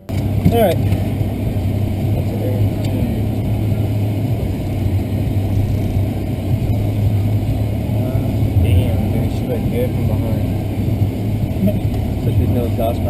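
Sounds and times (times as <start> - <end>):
car engine and road noise: 0.0 - 13.0.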